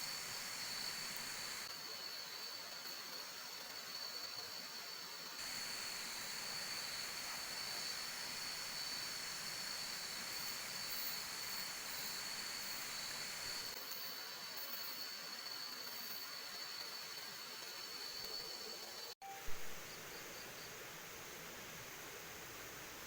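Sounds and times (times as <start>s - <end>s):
heavy rain hissing: 0.0s - 1.7s, 5.4s - 13.8s.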